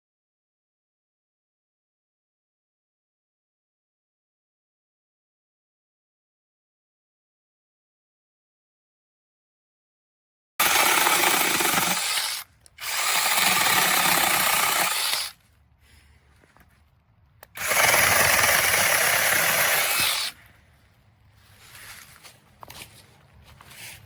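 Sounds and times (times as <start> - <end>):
chainsaw cutting wood: 10.6 - 15.4, 17.4 - 20.5.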